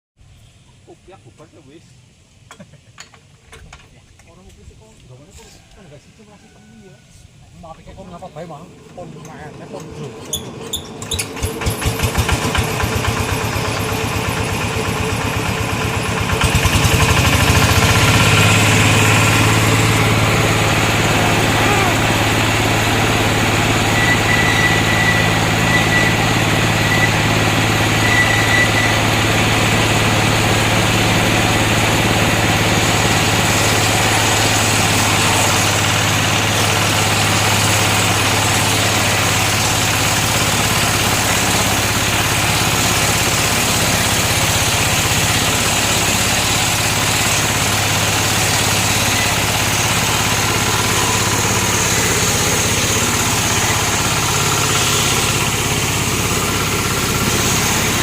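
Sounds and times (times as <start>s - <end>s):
circular saw engine humming: 12.6s - 58.0s.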